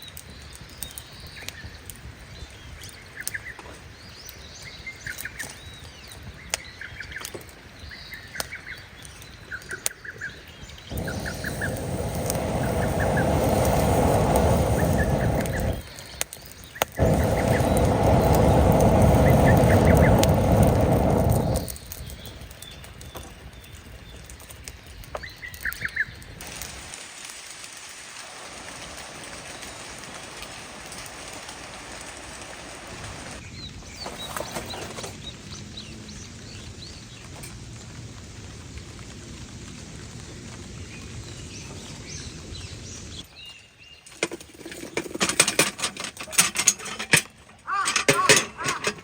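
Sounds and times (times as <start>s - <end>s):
steady rain hiss: 0.0s - 49.0s
low rumbling noise: 10.8s - 16.2s, 17.0s - 23.0s.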